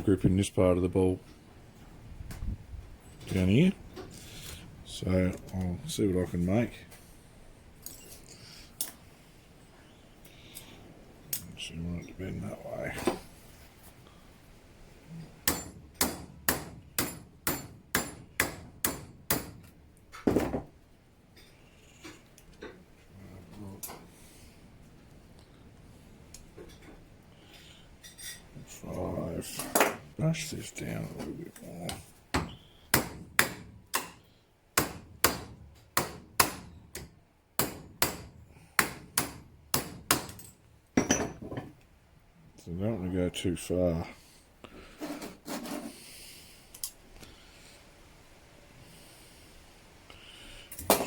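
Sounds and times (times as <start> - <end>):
hammer striking metal hinge: 15.4 - 19.7, 32.4 - 34.2, 34.8 - 40.4.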